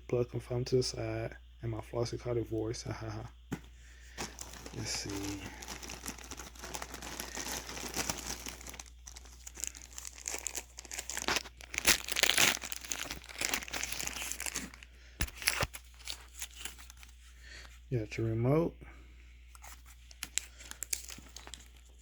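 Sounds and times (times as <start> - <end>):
packaging crinkling and rustling: 4.1 - 17.7, 19.5 - 22.0.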